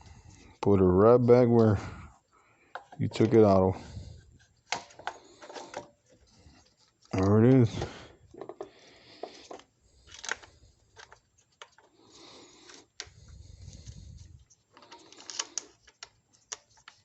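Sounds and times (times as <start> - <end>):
clicks and knocks of parts handled: 2.7 - 3.5, 4.4 - 12.0, 12.6 - 17.0.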